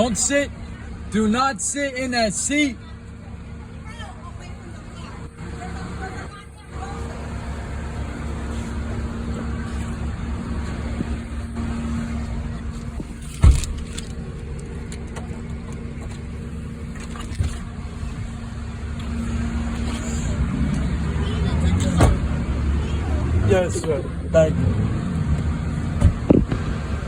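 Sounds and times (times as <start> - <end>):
vehicle engine idling: 0.0 - 27.0
loud thump: 13.0 - 13.8.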